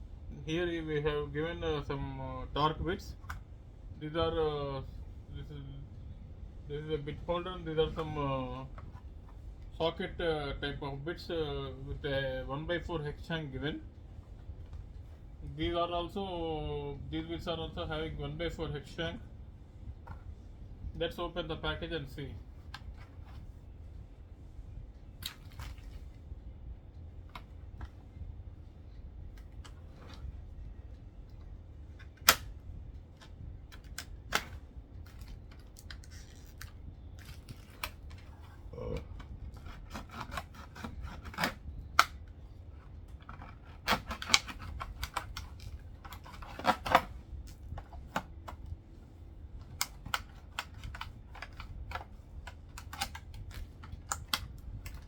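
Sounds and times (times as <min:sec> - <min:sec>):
low steady hum: 0:00.0 - 0:55.0
plastic packaging cracking and snapping: 0:43.3 - 0:47.1, 0:52.7 - 0:55.0.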